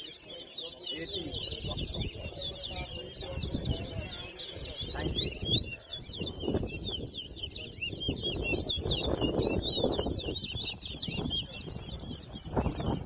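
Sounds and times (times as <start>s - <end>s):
low background murmur: 0.0s - 13.0s
songbirds chirping and warbling: 0.0s - 13.0s.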